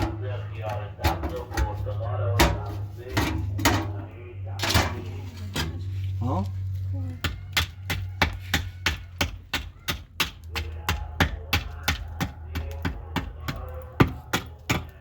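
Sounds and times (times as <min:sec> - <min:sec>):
low steady hum: 0:00.0 - 0:07.6.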